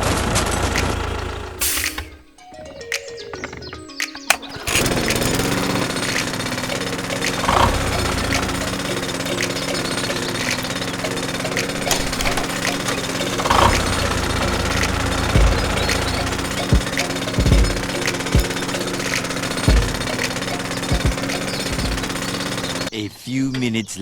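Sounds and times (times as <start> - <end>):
small machine chattering rapidly: 4.3 - 22.9.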